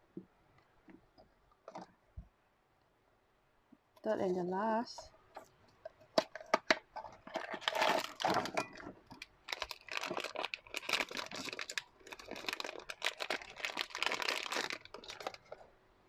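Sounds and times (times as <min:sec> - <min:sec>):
wrapper crinkling and tearing: 0:07.2 - 0:15.6
packaging clicks: 0:09.2 - 0:15.6.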